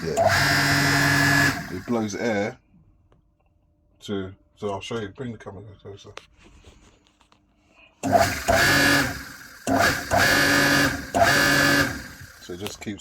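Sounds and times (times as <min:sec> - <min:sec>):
electric pump motor whirring: 0:00.0 - 0:02.1, 0:08.0 - 0:12.8.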